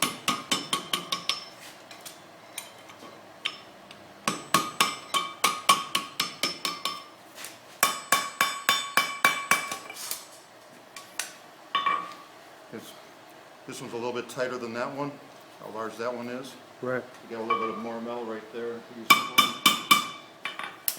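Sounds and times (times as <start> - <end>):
hammer striking steel on anvil: 0.0 - 1.6, 3.4 - 7.1, 7.8 - 9.9, 19.1 - 20.8.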